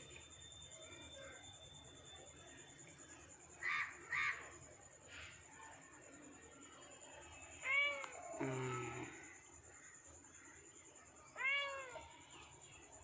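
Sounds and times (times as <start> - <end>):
cat meowing: 7.6 - 8.1, 11.4 - 12.1.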